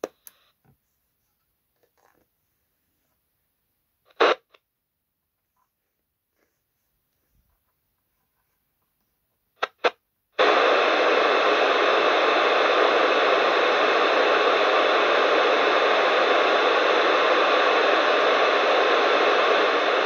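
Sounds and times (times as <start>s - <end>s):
radio crackles: 4.1s - 4.6s, 9.5s - 20.0s
radio receiver hiss: 4.1s - 4.6s, 9.5s - 20.0s.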